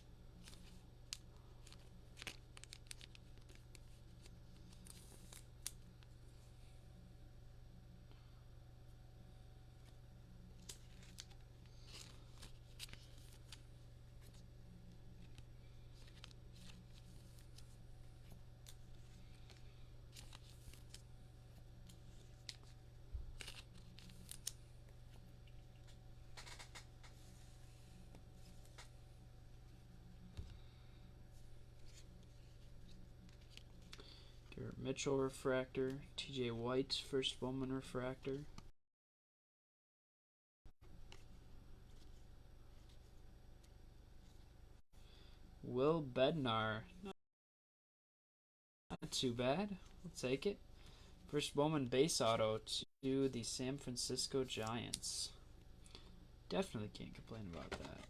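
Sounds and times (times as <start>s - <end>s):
low electrical hum: 0.0s - 38.7s, 40.8s - 47.1s, 48.9s - 58.0s
trading cards clicking and rustling: 0.4s - 6.1s, 10.6s - 21.1s, 21.8s - 27.2s, 57.2s - 58.0s.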